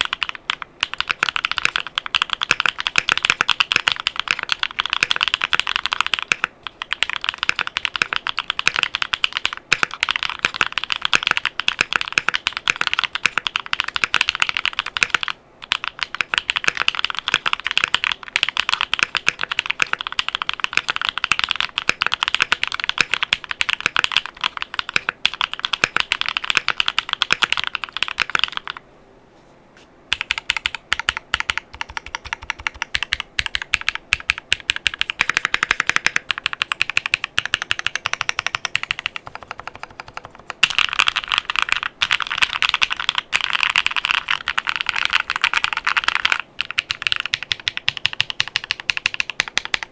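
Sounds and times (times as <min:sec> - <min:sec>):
mechanical keyboard typing: 0:00.0 - 0:28.8, 0:30.1 - 0:49.9.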